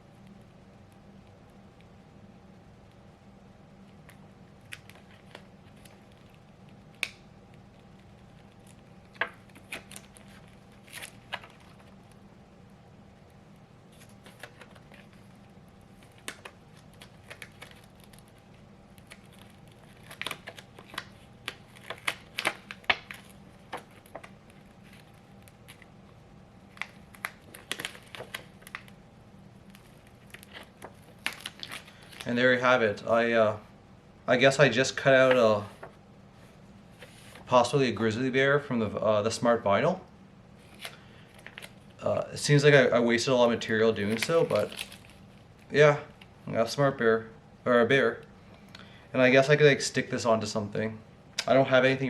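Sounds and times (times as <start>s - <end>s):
vinyl crackling as it is peeled: 3.7s - 12.3s, 13.0s - 32.6s, 40.6s - 42.0s, 43.6s - 46.4s.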